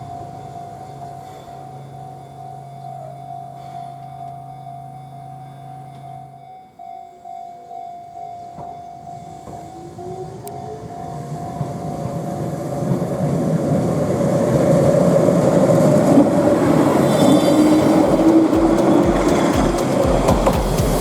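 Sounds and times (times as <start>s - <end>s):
train passing: 0.0s - 21.0s
low train wheel thumps: 15.9s - 21.0s.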